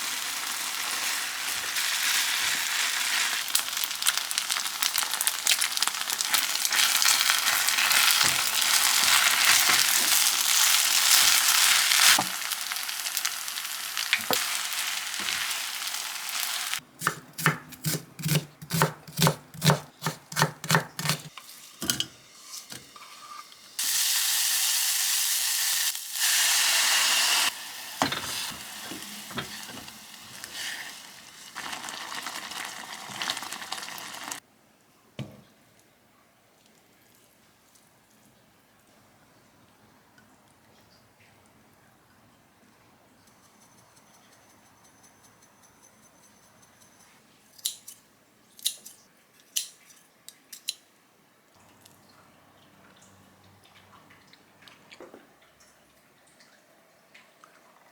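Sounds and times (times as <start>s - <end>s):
food sizzling in a pan: 0.0s - 16.8s, 21.2s - 34.4s.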